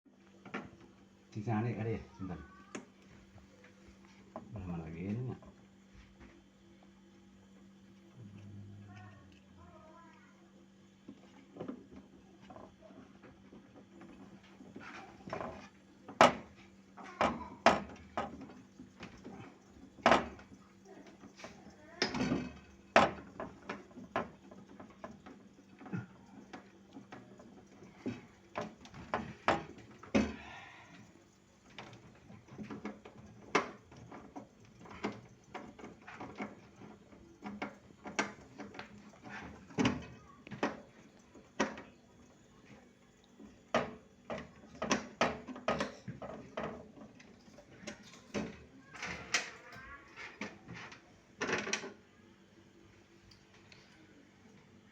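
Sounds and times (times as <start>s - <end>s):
faint low hum: 0.1s - 54.9s
tools and parts clattering: 43.7s - 52.0s.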